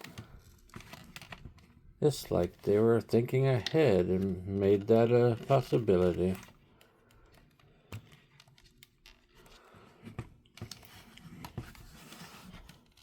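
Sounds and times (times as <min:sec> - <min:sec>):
plastic figures clicking and tapping: 0:00.0 - 0:13.0
soft rubbing: 0:10.8 - 0:13.0.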